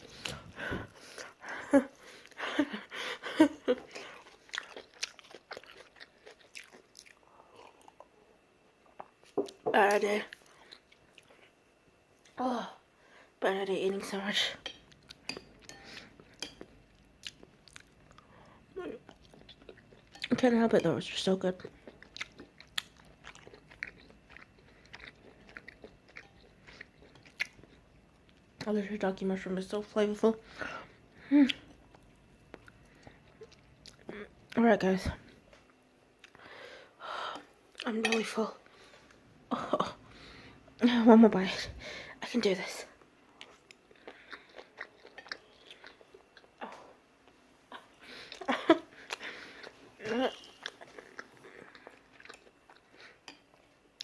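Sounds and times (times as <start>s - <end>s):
wet chewing sounds: 3.9s - 8.1s, 14.9s - 18.4s, 21.6s - 28.7s, 43.3s - 46.6s, 48.0s - 54.0s.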